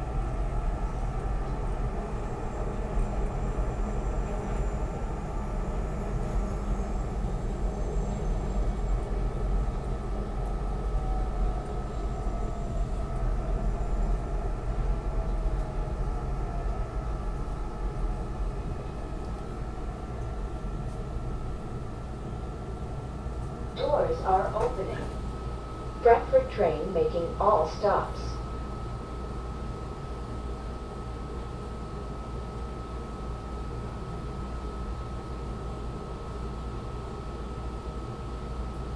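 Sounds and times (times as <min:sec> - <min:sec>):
train motor whine: 0:23.8 - 0:28.4.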